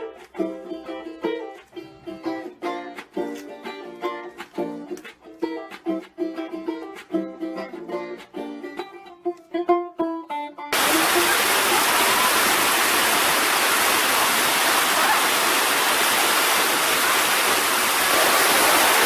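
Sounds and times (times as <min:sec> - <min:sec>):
plucked-string music: 0:00.0 - 0:11.4
waterfall rushing over rock: 0:10.8 - 0:19.0.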